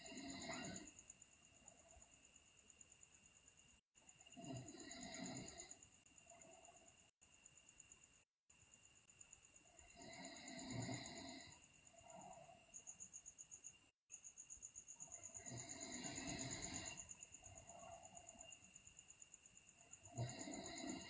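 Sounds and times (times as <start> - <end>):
girl breathing with soft snores: 0.0 - 1.1, 4.3 - 6.9, 9.7 - 12.8, 15.1 - 18.6, 20.0 - 21.0.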